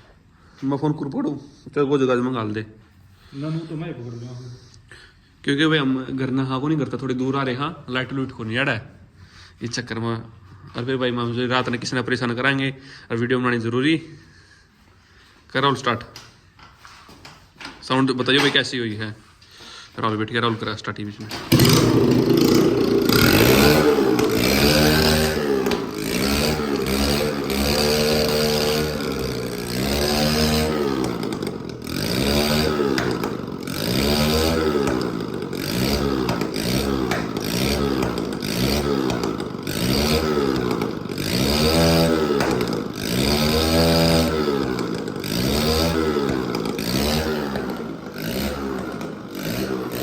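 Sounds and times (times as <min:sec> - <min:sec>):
motorcycle engine revving: 0:21.4 - 0:50.0.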